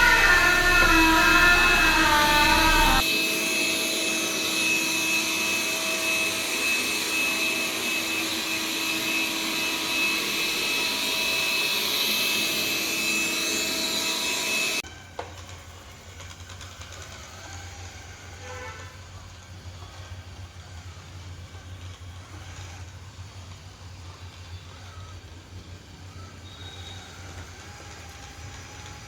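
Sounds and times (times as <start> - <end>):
low hum: 0.0 - 3.2
robot vacuum whirring: 0.0 - 14.8, 26.4 - 29.0.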